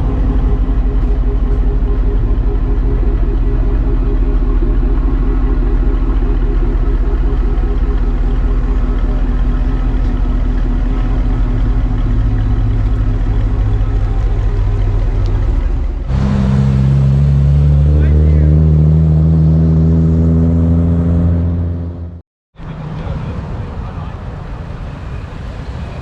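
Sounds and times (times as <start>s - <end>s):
car exhaust idling rumble: 0.0s - 18.5s.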